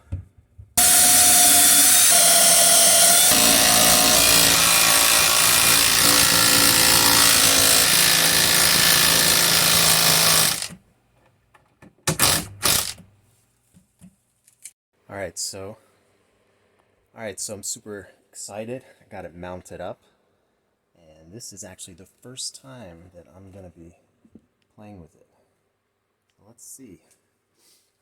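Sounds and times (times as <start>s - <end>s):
power drill drilling: 0.8s - 10.8s, 12.1s - 13.0s.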